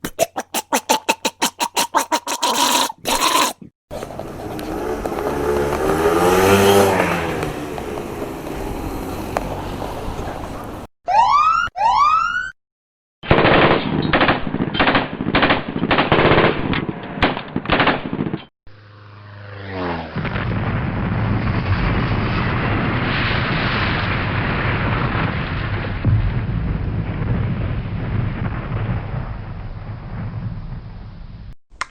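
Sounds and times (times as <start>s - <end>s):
motorcycle passing by: 4.1s - 10.8s, 18.8s - 20.4s
siren whoops: 11.1s - 12.6s
low rumble of plane crash: 19.2s - 31.6s.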